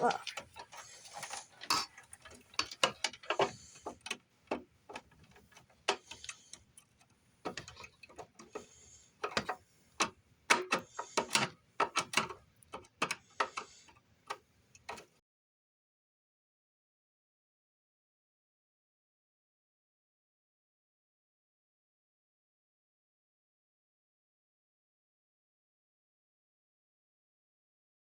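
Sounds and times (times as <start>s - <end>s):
small hardware clicking and knocking: 0.0s - 15.1s.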